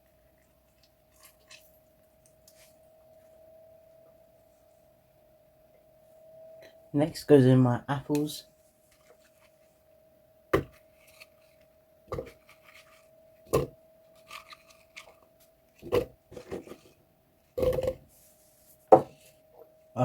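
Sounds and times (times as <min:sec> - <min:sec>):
apple pieces knocking into blender jar: 0:10.6 - 0:10.8.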